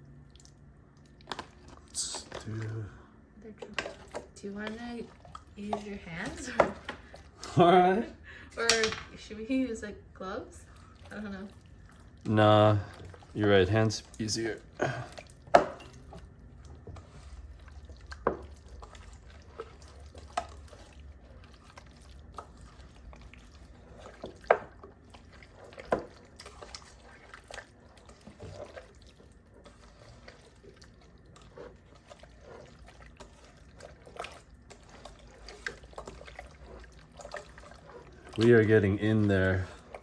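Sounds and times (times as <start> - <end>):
wet squelches and slaps: 0.2 - 2.7.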